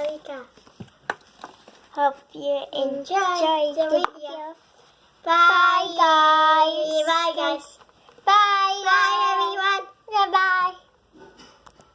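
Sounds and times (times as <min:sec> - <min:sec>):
child singing: 0:02.0 - 0:04.6, 0:05.2 - 0:10.9.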